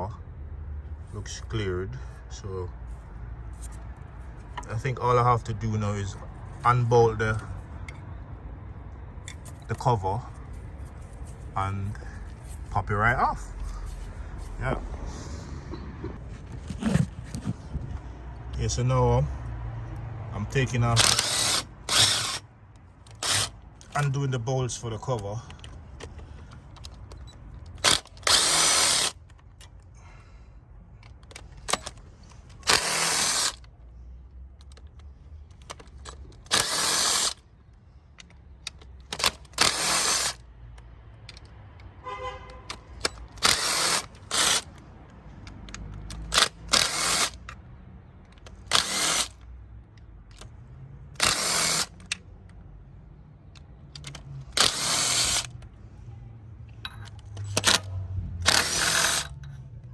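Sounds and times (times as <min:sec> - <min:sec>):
cordless power tool spinning bolts: 0:20.9 - 0:22.4, 0:23.1 - 0:24.2, 0:25.6 - 0:29.4, 0:31.3 - 0:33.7, 0:35.6 - 0:37.4, 0:39.0 - 0:40.4, 0:42.7 - 0:44.8, 0:46.1 - 0:47.5, 0:48.4 - 0:49.4, 0:51.2 - 0:52.2, 0:54.0 - 0:55.6, 0:57.4 - 0:59.4.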